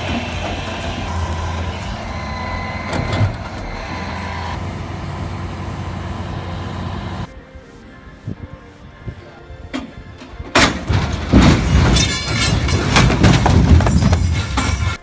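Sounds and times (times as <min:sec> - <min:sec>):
heavy truck engine running: 0:00.0 - 0:07.3
engine whine: 0:00.0 - 0:07.5.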